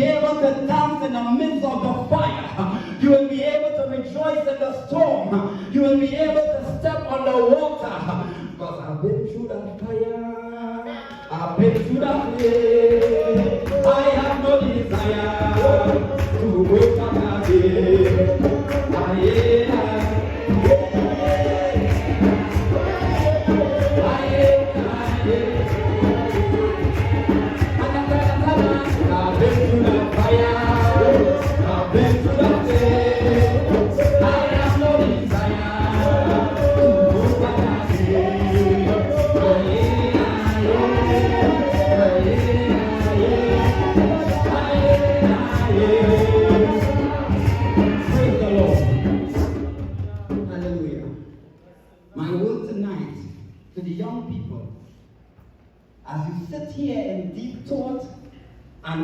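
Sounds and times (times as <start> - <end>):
gospel singing: 0.0 - 54.6
percussion beat: 11.4 - 51.0.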